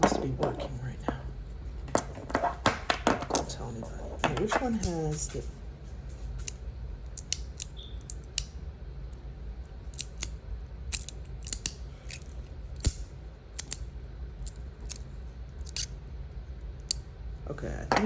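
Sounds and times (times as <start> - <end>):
steady low hum: 0.0 - 18.0
metal fidget slider clicking: 9.9 - 10.3, 10.9 - 13.0, 13.6 - 13.8, 15.6 - 15.9.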